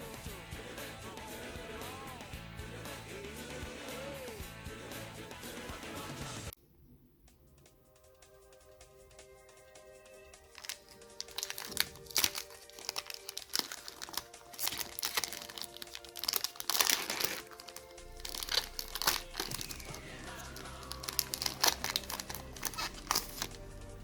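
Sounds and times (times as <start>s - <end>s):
background music: 0.0s - 6.6s, 7.3s - 24.0s
foil wrapper crinkling and tearing: 10.5s - 23.6s.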